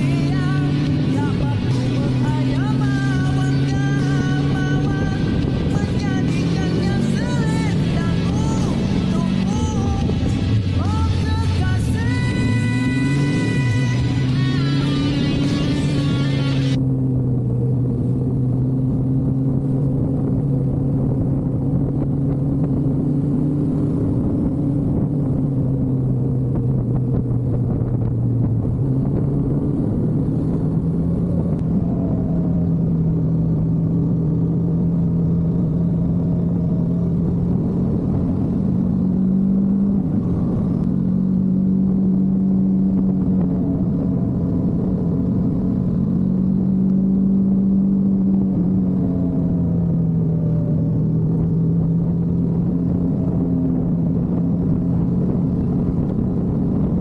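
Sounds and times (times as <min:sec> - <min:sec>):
road rumble: 0:00.0 - 0:57.0
vehicle engine cruising: 0:00.0 - 0:57.0.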